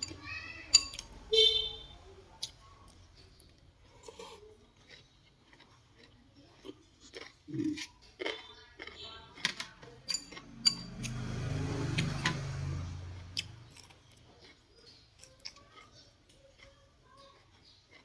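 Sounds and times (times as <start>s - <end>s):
utensils clinking against bowl: 0.0s - 1.2s, 9.3s - 11.2s.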